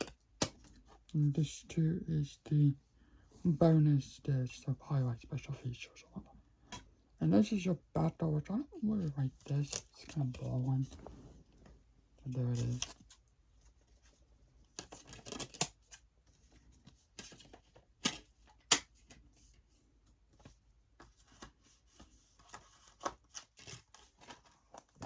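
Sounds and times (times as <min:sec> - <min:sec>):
paper rustling: 0:19.1 - 0:25.0.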